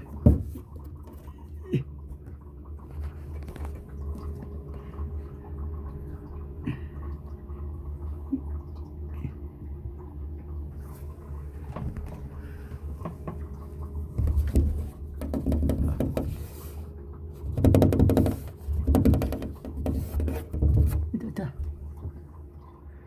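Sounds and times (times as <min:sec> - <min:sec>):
steady low hum: 0:00.0 - 0:23.0
cat scratching at door: 0:14.3 - 0:16.6, 0:17.4 - 0:21.1.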